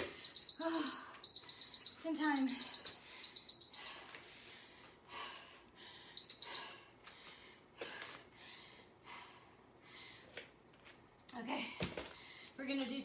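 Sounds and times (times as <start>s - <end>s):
timer beeping high tone: 0.2s - 4.0s, 6.2s - 6.7s.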